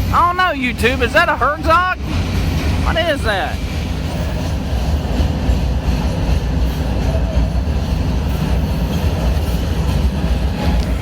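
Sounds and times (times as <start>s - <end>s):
freight train wheels rumbling: 0.0s - 11.0s.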